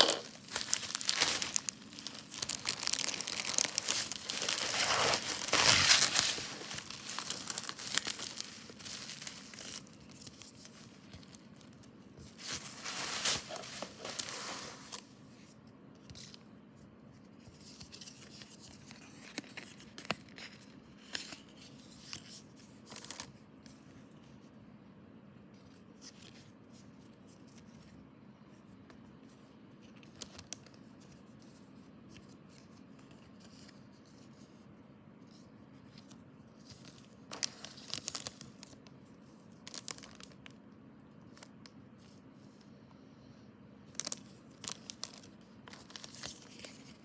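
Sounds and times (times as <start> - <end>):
packaging crinkling and tearing: 0.0 - 15.1, 22.8 - 23.4, 36.7 - 38.9, 39.5 - 40.6, 43.9 - 47.0.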